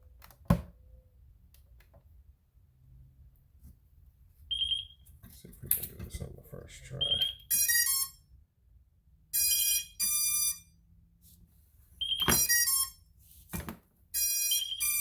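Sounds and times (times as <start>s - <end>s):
electronic beep tones: 7.0s - 8.1s, 14.2s - 15.0s.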